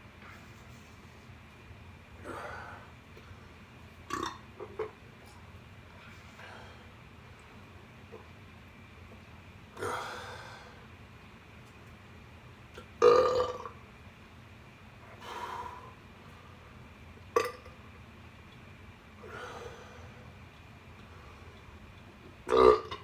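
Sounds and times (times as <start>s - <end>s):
man belching: 13.0s - 13.7s, 17.4s - 17.7s, 22.5s - 23.0s.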